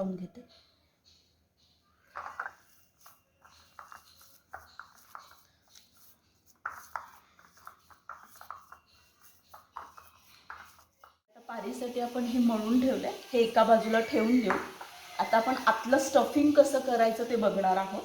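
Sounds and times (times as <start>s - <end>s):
hands kneading dough: 2.0s - 11.2s.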